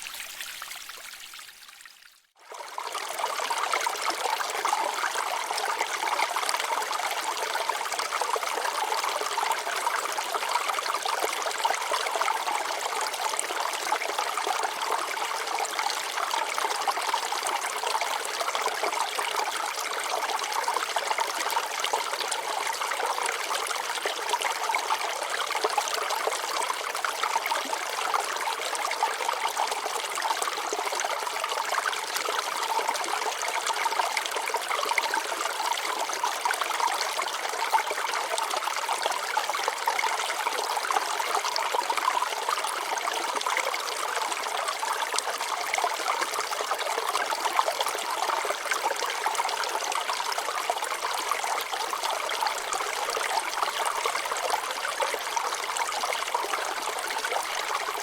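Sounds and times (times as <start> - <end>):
water trickling over rocks: 0.0 - 58.0.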